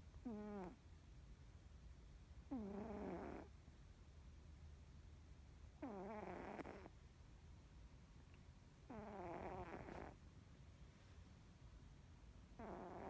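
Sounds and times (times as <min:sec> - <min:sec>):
cat snoring: 0:00.2 - 0:00.8, 0:02.5 - 0:03.5, 0:05.8 - 0:06.9, 0:08.9 - 0:10.2, 0:12.6 - 0:13.0.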